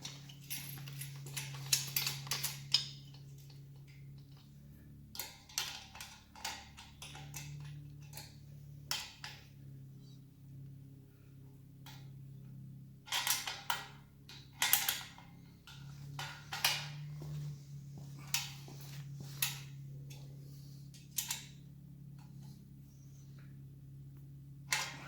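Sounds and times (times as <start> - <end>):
metal tools clinking on exhaust: 0.0 - 4.6, 5.2 - 9.5, 13.1 - 21.6
steady low hum: 0.0 - 25.0.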